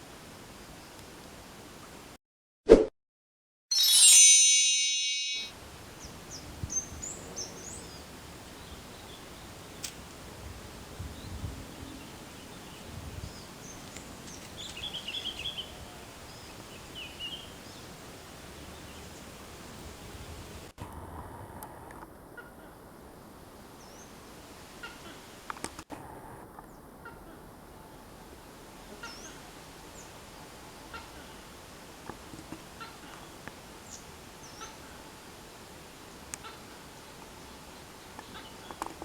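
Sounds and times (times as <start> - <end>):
bright ringing chime: 3.7 - 5.6.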